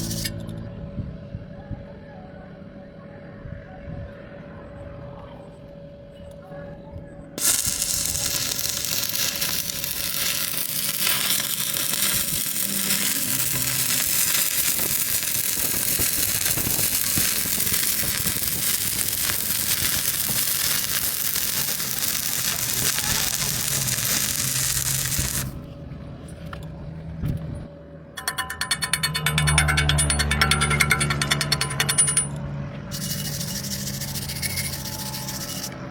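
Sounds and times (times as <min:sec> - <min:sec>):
arc welding sizzle: 0:00.0 - 0:00.5, 0:07.4 - 0:25.6, 0:32.9 - 0:35.8
rapid even rattle: 0:32.9 - 0:35.8.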